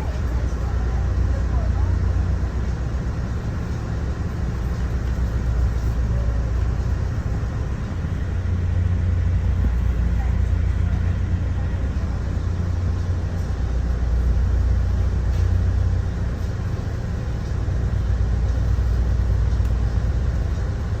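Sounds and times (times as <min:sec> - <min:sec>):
vehicle low rumble: 0:00.0 - 0:21.0.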